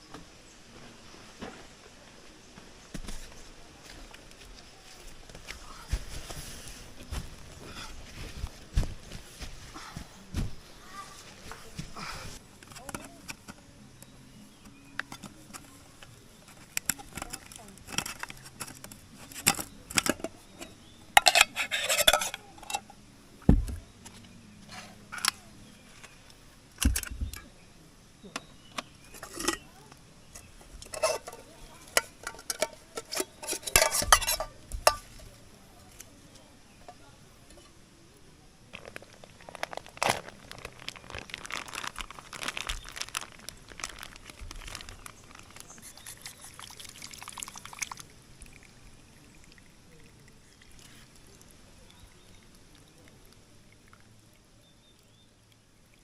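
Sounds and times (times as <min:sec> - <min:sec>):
cookware rattling and scraping: 0:16.5 - 0:22.9, 0:29.1 - 0:29.7, 0:30.4 - 0:35.2
pots and utensils clinking: 0:16.5 - 0:22.9, 0:28.4 - 0:35.3.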